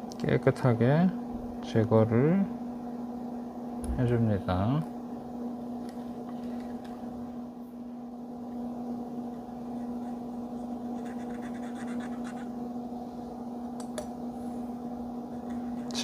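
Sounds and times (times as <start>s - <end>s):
steady electrical hum: 0.0s - 16.0s
light scratching on circuit board: 9.7s - 12.5s.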